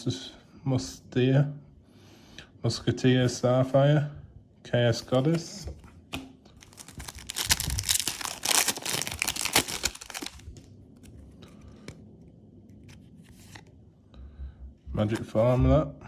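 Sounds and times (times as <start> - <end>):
foil wrapper tearing and crinkling: 6.6 - 11.1.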